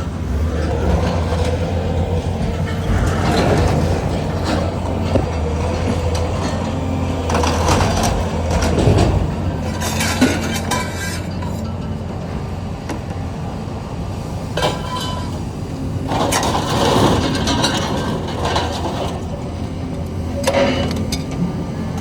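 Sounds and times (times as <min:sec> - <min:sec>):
scrap metal clanking: 0:00.0 - 0:11.9.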